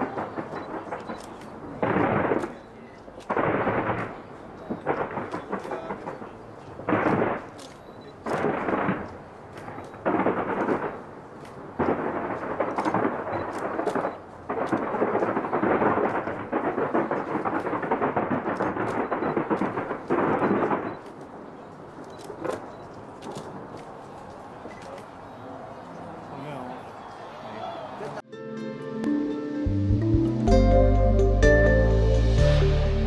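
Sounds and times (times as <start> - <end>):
fireworks booming bursts: 0.0 - 23.8
fireworks crackling: 0.0 - 25.2.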